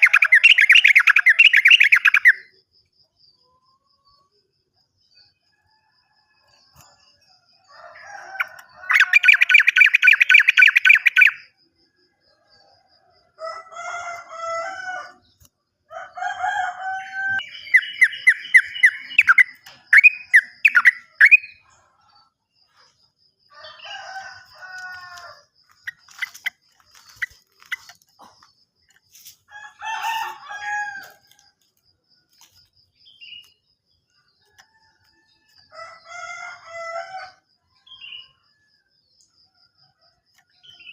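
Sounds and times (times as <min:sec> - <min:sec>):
bulbul singing: 0:00.0 - 0:02.5, 0:08.4 - 0:11.5, 0:17.3 - 0:21.6.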